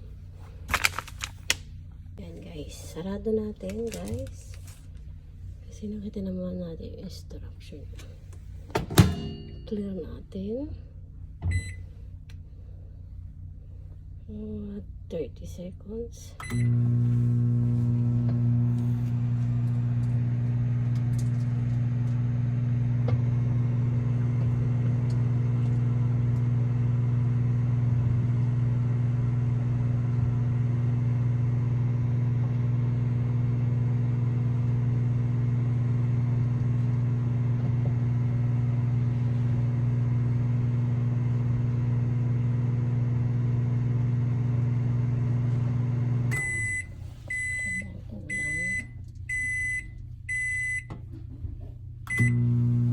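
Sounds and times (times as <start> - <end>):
microwave oven humming: 8.6 - 9.8, 16.4 - 52.9.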